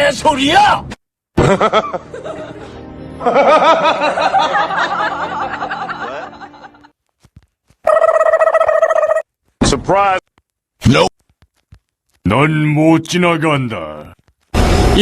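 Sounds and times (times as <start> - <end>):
music: 1.4 - 6.9, 14.5 - 15.0.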